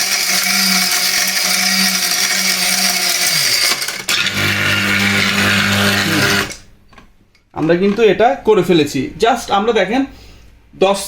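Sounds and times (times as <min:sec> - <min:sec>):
spice grinder pulverising brick: 0:00.0 - 0:06.7.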